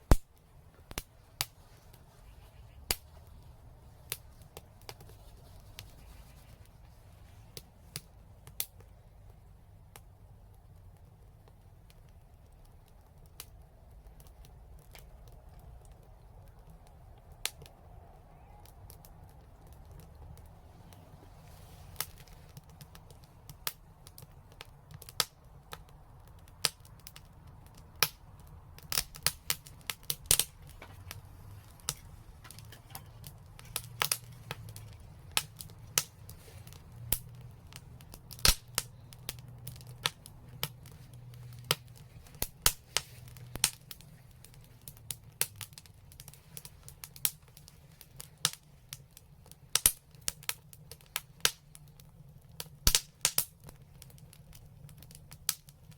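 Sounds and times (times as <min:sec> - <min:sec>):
sharp pops and snaps: 0:00.0 - 0:55.9
wood fire crackling: 0:00.0 - 0:55.9
low steady rumble: 0:27.1 - 0:55.9.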